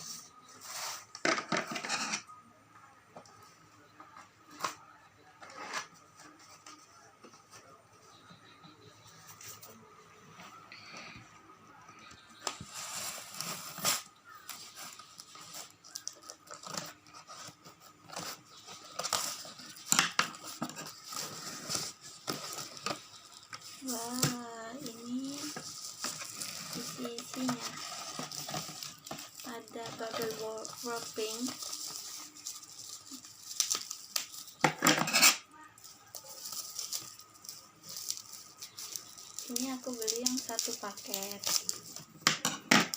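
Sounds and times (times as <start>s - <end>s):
packaging rustling and tearing: 12.4s - 42.2s.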